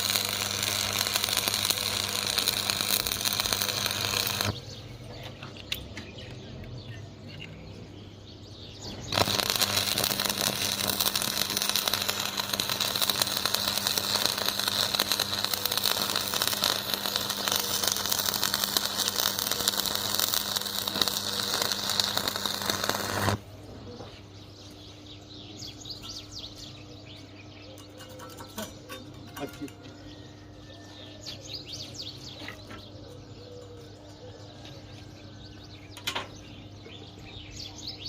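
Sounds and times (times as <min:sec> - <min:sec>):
welding arc crackling and hissing: 0:00.0 - 0:04.7, 0:09.1 - 0:23.5.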